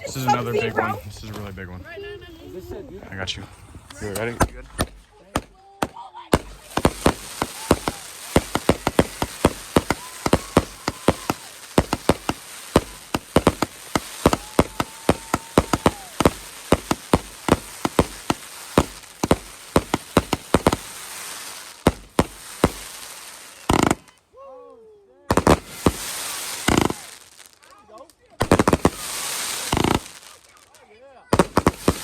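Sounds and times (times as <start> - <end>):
fireworks bangs and cracks: 3.1 - 24.2, 25.3 - 32.0
fireworks whistles: 6.3 - 24.2, 25.3 - 27.7, 28.4 - 32.0.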